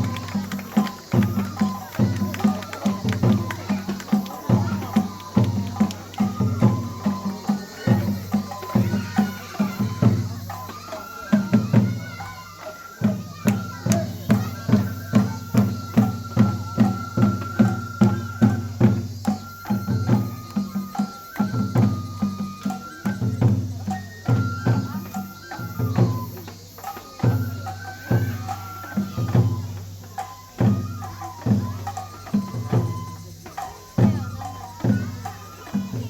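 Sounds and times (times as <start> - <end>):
drum beating: 0.0 - 36.0
high flute melody: 0.0 - 36.0.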